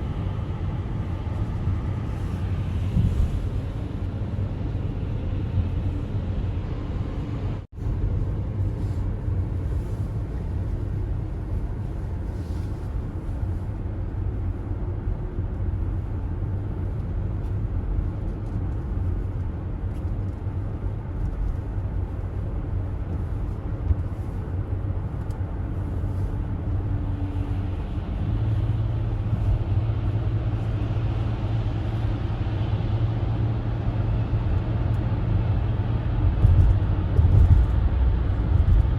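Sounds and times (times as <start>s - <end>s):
car engine and tyre rumble: 0.0s - 38.9s
deep low hum: 0.0s - 38.9s.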